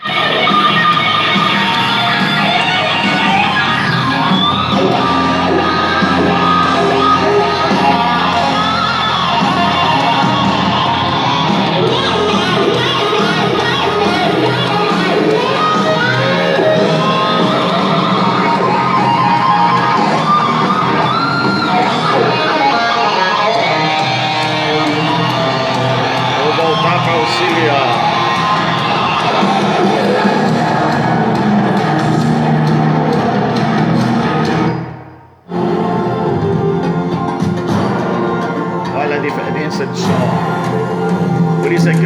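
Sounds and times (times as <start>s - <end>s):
music with singing from speakers: 0.0s - 42.0s.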